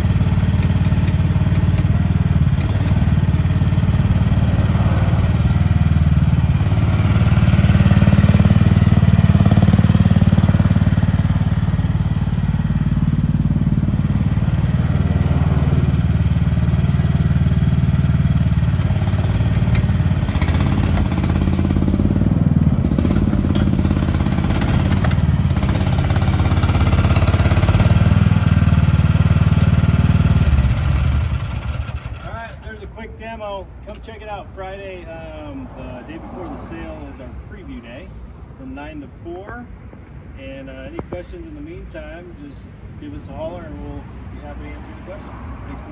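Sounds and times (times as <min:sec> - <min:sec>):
excavator engine running: 0:00.0 - 0:32.9
knocks and clatter: 0:22.8 - 0:28.0.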